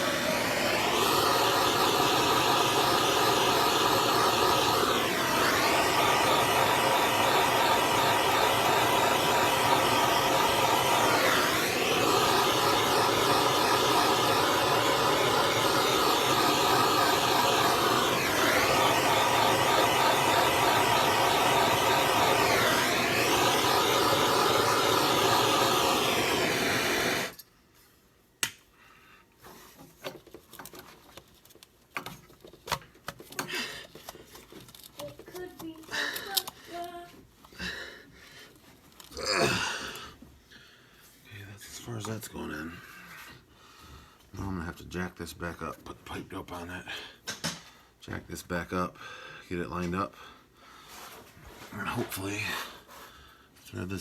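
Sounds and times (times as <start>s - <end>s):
heat gun whirring hiss: 0.0s - 27.4s, 35.0s - 37.0s.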